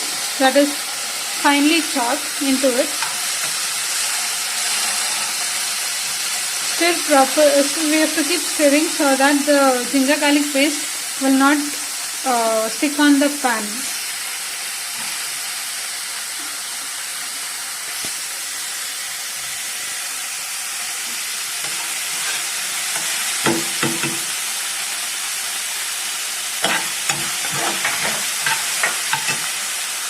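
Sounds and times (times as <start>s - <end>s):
onions sizzling in hot oil: 0.0s - 30.0s
spoon scraping pan: 2.9s - 6.8s, 21.6s - 24.3s, 26.6s - 29.6s.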